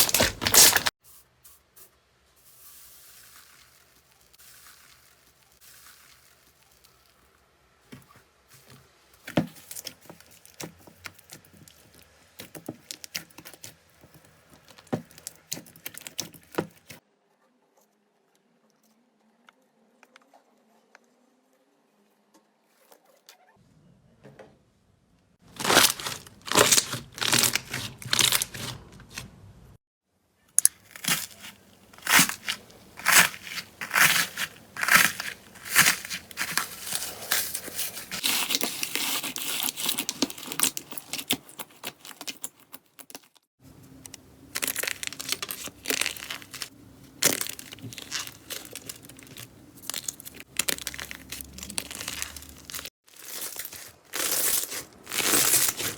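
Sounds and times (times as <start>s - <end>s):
slime crackling and popping: 0.0s - 1.0s, 9.6s - 17.0s, 25.5s - 28.7s, 30.6s - 43.4s, 44.0s - 55.9s.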